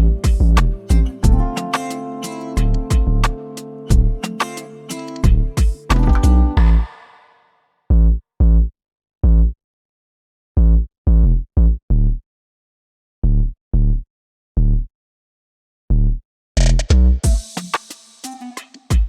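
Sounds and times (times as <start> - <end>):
deep electronic bass hits: 0.0 - 1.5, 2.6 - 4.2, 5.2 - 6.9.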